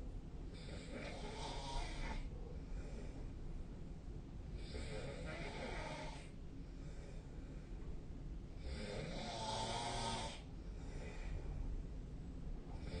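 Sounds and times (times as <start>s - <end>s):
quiet breaths: 0.0s - 13.0s
person snoring: 0.6s - 2.3s, 4.6s - 6.3s, 8.6s - 10.5s, 12.8s - 13.0s.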